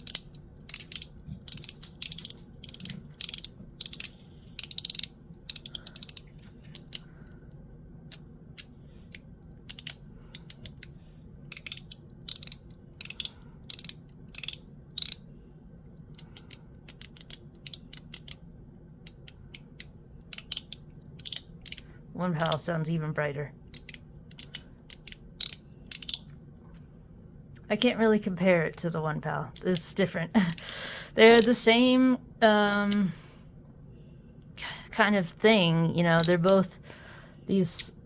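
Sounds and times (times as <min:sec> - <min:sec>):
fidget slider clicking: 0:00.0 - 0:07.1, 0:08.1 - 0:15.2, 0:16.2 - 0:18.4, 0:19.0 - 0:22.6, 0:23.7 - 0:26.3, 0:31.3 - 0:31.6, 0:36.2 - 0:36.7.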